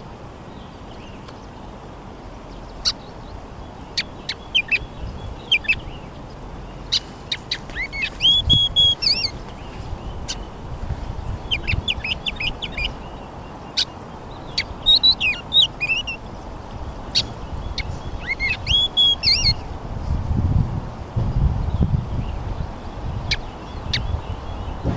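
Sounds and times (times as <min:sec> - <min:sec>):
songbirds singing: 0:00.0 - 0:24.9
steady outdoor hiss: 0:00.0 - 0:24.9
sharp bird chip calls: 0:02.5 - 0:19.7, 0:23.2 - 0:24.9.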